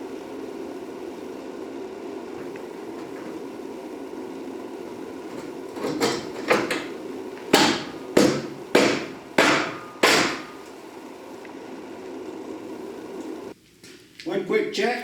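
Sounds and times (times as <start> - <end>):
hammer blows: 5.3 - 10.8.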